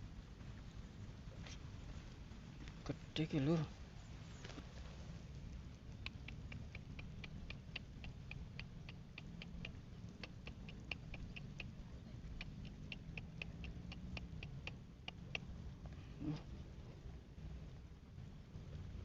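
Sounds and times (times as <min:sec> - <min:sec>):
low steady rumble: 0:00.0 - 0:19.0
small animal chirping: 0:05.8 - 0:15.6.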